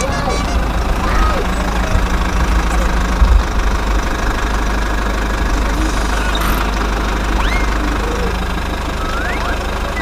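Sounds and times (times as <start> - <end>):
motor running: 0.0 - 10.0
bird chirping: 7.3 - 8.4, 9.0 - 10.0.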